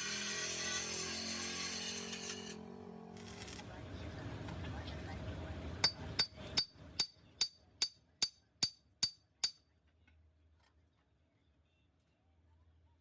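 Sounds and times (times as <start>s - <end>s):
hammer striking metal: 5.8s - 9.6s.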